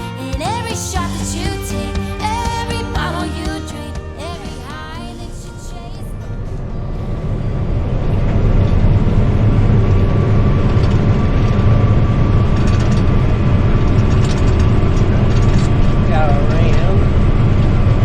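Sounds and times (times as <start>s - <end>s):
heavy machinery rumbling: 0.0s - 18.0s.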